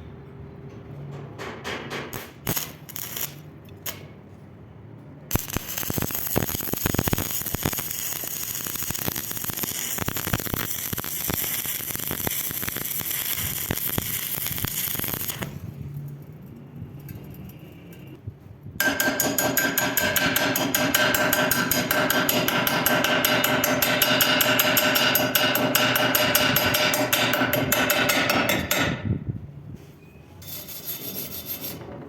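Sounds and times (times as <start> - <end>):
welding arc crackling: 2.2 - 4.0, 5.3 - 15.8.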